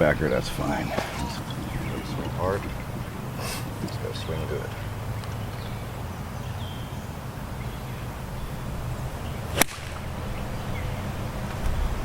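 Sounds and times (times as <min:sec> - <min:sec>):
wind rumble on microphone: 0:00.0 - 0:04.1, 0:08.0 - 0:12.0
golf club swish: 0:09.5 - 0:10.1
golf club striking ball: 0:09.5 - 0:10.4.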